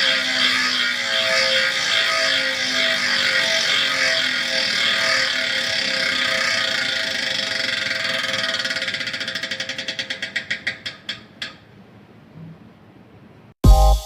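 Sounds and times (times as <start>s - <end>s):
bicycle freehub ratcheting: 1.5s - 11.6s.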